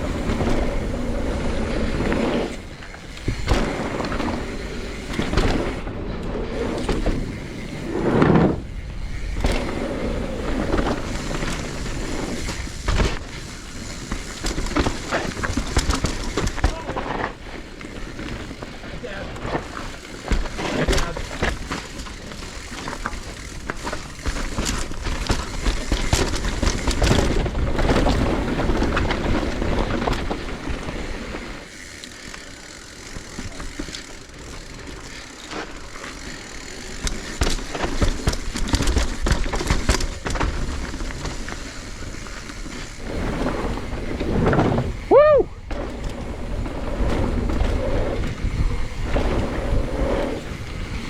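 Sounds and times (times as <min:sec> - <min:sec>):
bike clicking and rattling: 0:00.0 - 0:51.0
tyres on dirt: 0:00.0 - 0:51.0
wind rumble on microphone: 0:43.0 - 0:51.0.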